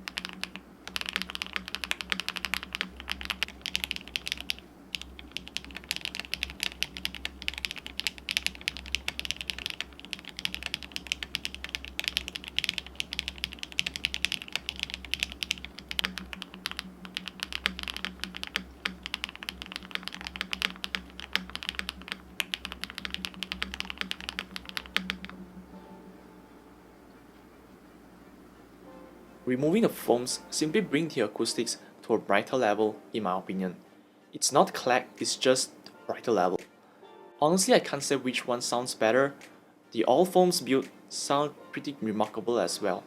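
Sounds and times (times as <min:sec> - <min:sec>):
mechanical keyboard typing: 0:00.0 - 0:25.4.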